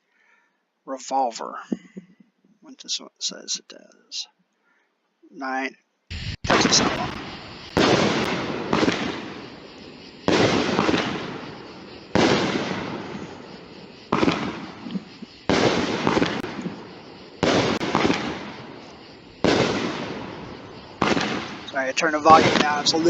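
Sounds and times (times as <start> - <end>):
firework bangs: 6.1 - 23.0.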